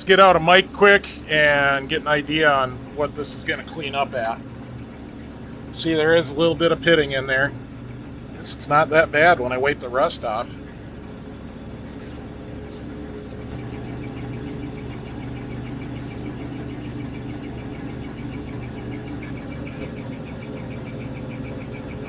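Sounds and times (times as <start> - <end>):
machine humming: 0.0 - 22.0
faint even ticking: 12.6 - 22.0.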